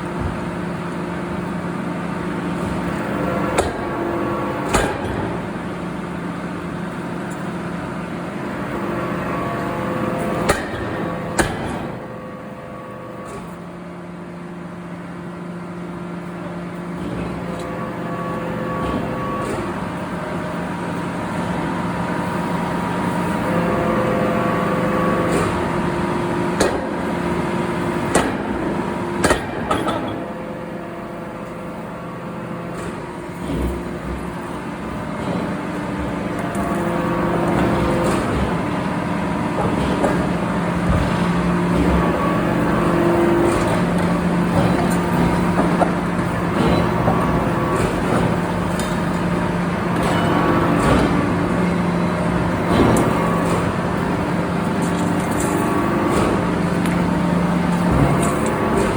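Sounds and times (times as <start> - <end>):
factory machinery droning: 0.0 - 58.9
sharp metallic knocks: 29.2 - 30.2.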